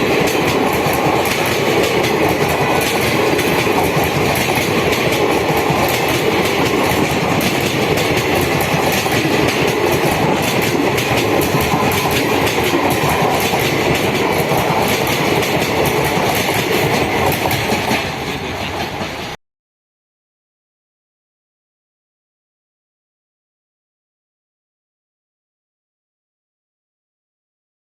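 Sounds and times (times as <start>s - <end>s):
train wheels clattering over rail joints: 0.0s - 19.4s.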